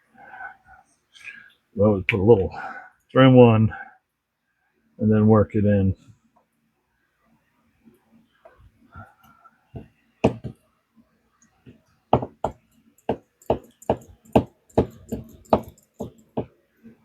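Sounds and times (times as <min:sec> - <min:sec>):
metal hex keys clicking: 0:12.7 - 0:16.4.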